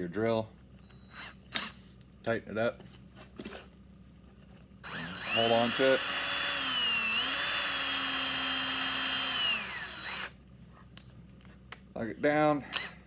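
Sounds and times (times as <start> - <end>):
electric drill whining: 4.8 - 10.4, 12.7 - 13.0.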